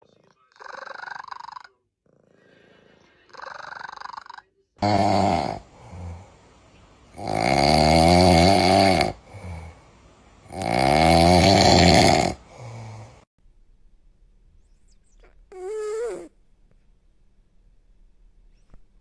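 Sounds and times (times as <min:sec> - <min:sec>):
cat snoring: 0:00.0 - 0:06.3, 0:07.1 - 0:09.8, 0:10.5 - 0:13.2, 0:15.5 - 0:16.3.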